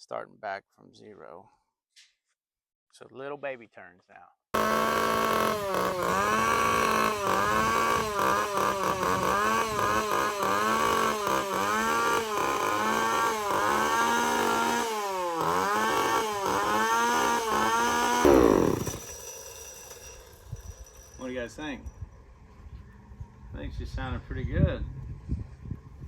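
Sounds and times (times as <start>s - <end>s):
engine shutting off and winding down: 4.6s - 20.0s
chainsaw engine revving: 4.6s - 20.5s.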